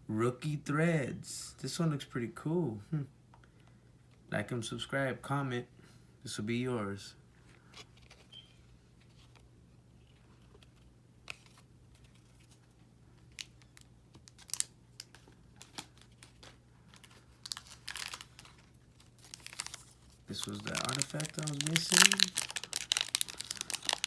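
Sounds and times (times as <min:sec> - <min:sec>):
faint low hum: 0:00.0 - 0:24.0
cards rustling: 0:07.5 - 0:24.0.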